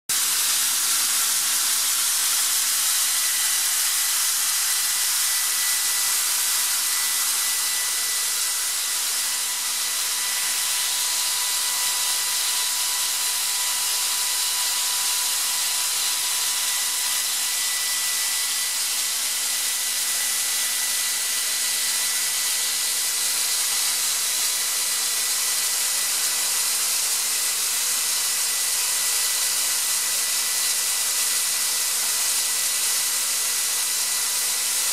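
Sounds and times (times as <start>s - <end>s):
air compressor hissing: 0.1s - 21.5s.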